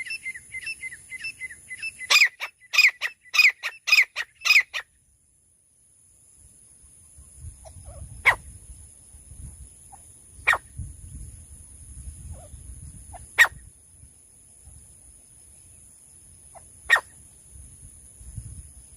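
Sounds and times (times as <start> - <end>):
sharp animal calls: 0.0 - 4.9, 9.9 - 10.7, 12.3 - 13.7, 16.5 - 17.2
steady high hiss: 4.9 - 18.9.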